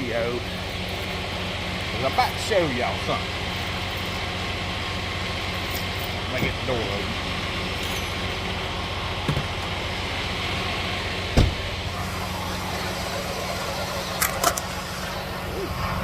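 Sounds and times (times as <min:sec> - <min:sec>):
truck engine idling: 0:00.0 - 0:16.0
sharp thump: 0:11.4 - 0:11.7.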